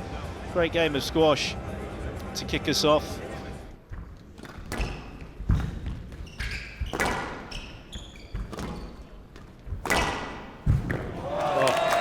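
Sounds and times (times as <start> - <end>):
shoes squeaking on court floor: 3.8 - 10.8
squash ball knocks: 3.9 - 6.2, 6.8 - 7.5, 8.3 - 11.2.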